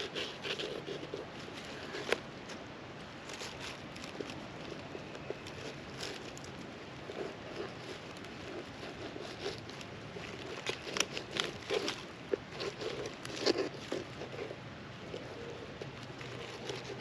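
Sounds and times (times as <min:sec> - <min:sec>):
knife scraping and cutting fish: 0:00.0 - 0:02.2, 0:07.1 - 0:14.5, 0:15.1 - 0:17.0
steady background hiss: 0:00.0 - 0:17.0.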